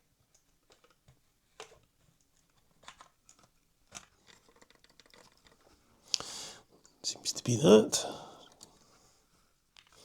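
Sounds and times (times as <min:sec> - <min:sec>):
small plastic parts clicking: 0:02.8 - 0:06.2.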